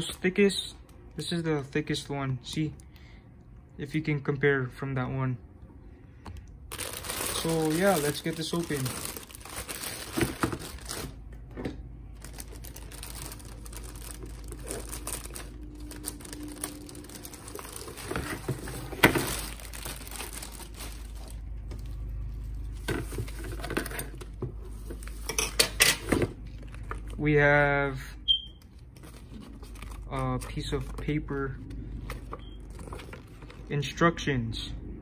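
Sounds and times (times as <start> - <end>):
cardboard packaging rustling: 6.7 - 11.2, 12.1 - 25.3, 28.6 - 33.8.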